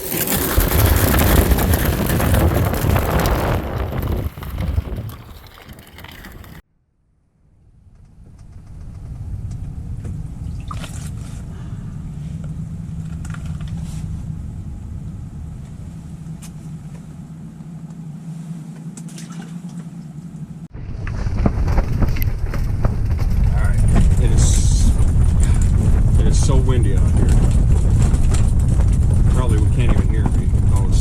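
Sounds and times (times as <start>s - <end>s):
low hum: 0.0s - 31.0s
wind buffeting microphone: 0.4s - 6.6s, 20.7s - 31.0s.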